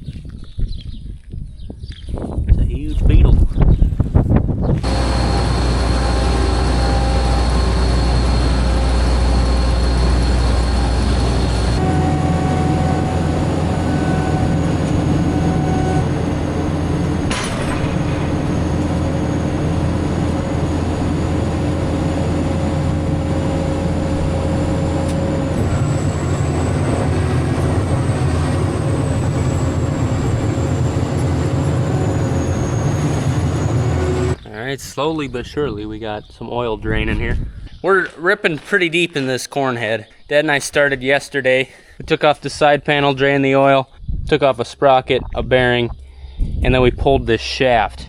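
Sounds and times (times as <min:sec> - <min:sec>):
large machine engine rumbling: 0:04.6 - 0:37.4.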